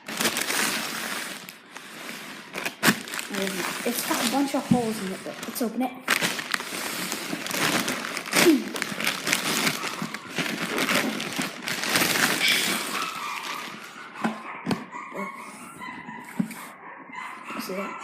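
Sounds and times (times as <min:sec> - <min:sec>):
package rustling and tearing: 0:00.0 - 0:14.0.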